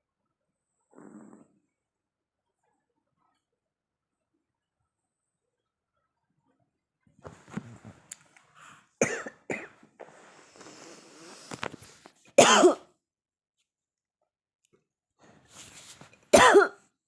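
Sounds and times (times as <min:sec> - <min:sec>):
cough-like bursts: 0:09.0 - 0:09.8, 0:12.4 - 0:12.9, 0:16.3 - 0:16.8.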